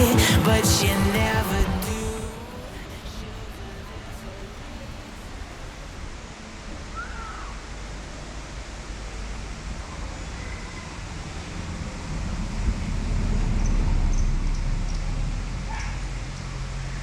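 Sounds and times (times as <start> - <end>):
waterfall roaring: 0.0 - 6.6.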